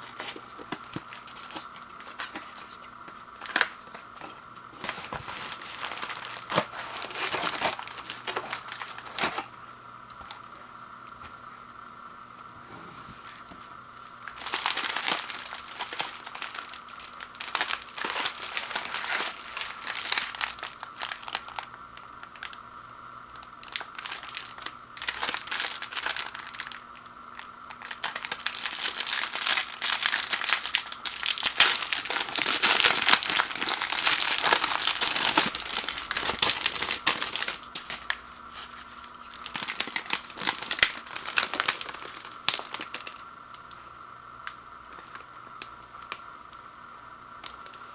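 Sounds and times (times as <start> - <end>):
packaging crinkling and tearing: 0.0 - 9.6, 14.1 - 22.6, 23.3 - 43.8, 44.9 - 46.2, 47.4 - 47.9.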